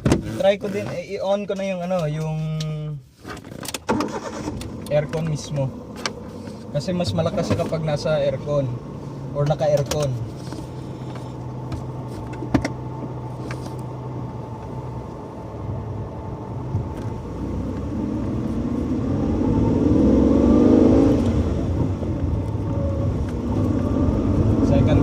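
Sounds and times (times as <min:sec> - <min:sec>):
car engine accelerating: 0:04.1 - 0:25.0.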